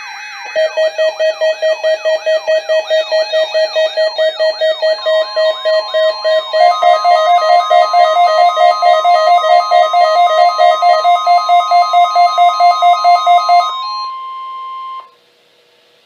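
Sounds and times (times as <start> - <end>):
rapid two-note alarm beeping: 0.0 - 15.1
steady alarm tone: 0.0 - 15.1.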